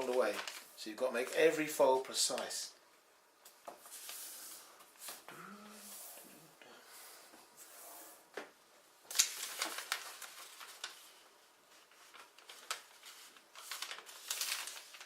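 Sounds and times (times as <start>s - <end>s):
paper crinkling and creasing: 0.0s - 1.6s, 9.1s - 15.0s.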